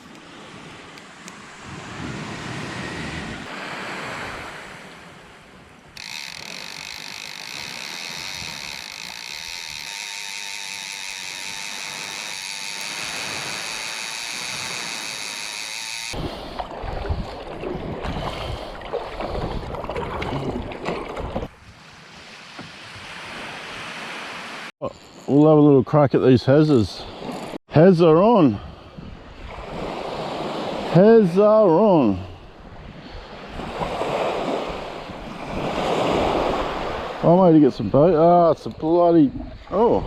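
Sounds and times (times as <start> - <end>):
surf washing on beach: 0.0 - 8.7, 21.5 - 24.7, 29.3 - 37.8
wind buffeting microphone: 16.2 - 21.6.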